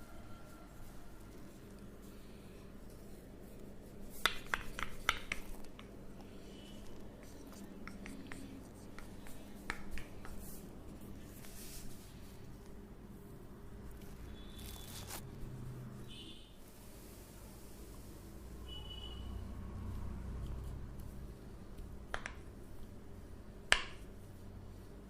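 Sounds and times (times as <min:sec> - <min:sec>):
rubbing over skin and hair: 0:00.4 - 0:16.0
sharp clicks and taps: 0:04.2 - 0:05.9, 0:07.6 - 0:10.4, 0:21.8 - 0:22.4.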